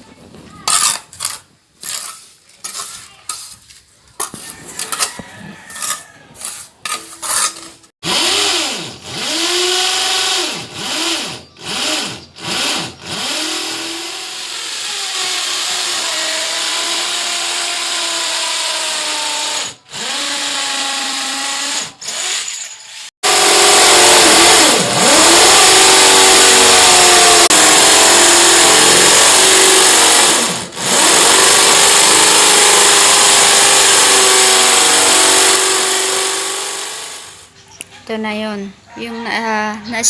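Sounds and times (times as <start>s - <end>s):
electric power tool running: 8.0s - 37.5s.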